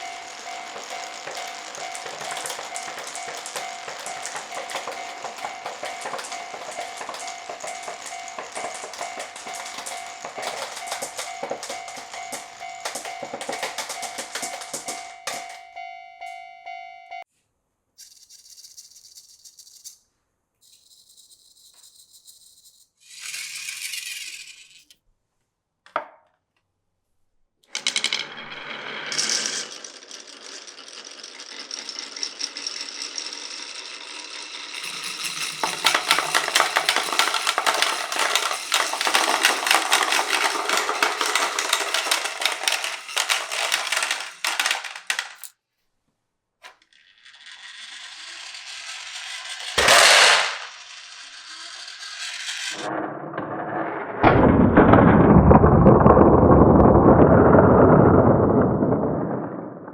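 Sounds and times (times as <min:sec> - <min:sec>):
glass marbles clattering on wooden run: 0:00.0 - 0:15.9, 0:27.7 - 0:45.5, 0:46.7 - 0:59.9.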